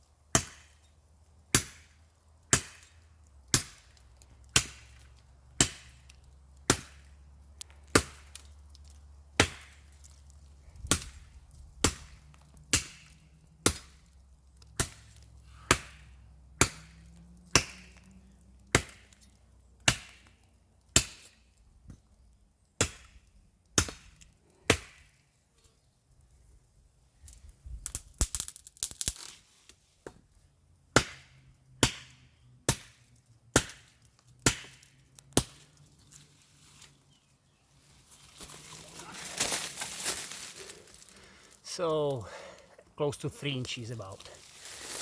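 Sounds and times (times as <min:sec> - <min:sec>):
machete chopping wood: 0:00.3 - 0:00.8, 0:01.5 - 0:05.0, 0:05.6 - 0:06.0, 0:06.6 - 0:07.2, 0:07.8 - 0:08.4, 0:09.4 - 0:09.9, 0:10.8 - 0:14.0, 0:14.8 - 0:18.0, 0:18.7 - 0:19.2, 0:19.8 - 0:21.4, 0:22.8 - 0:23.2, 0:23.8 - 0:25.2, 0:30.9 - 0:35.6.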